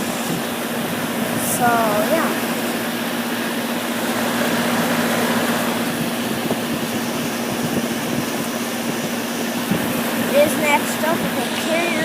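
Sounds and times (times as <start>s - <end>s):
compressor low hum: 0.0s - 12.0s
condenser fan air rushing: 0.0s - 12.0s.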